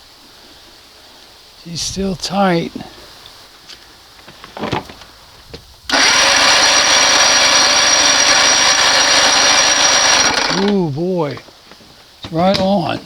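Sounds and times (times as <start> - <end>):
outboard motor starter cranking: 5.9 - 10.9.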